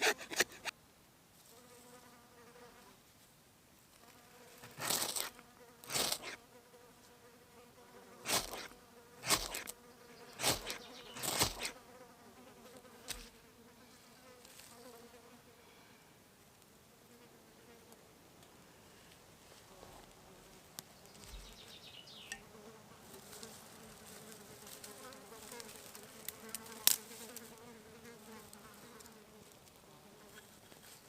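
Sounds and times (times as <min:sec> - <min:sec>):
fly buzzing: 0:01.5 - 0:02.9, 0:04.0 - 0:15.8, 0:19.7 - 0:30.8
loud noisy strokes: 0:05.9 - 0:06.4, 0:08.3 - 0:09.7.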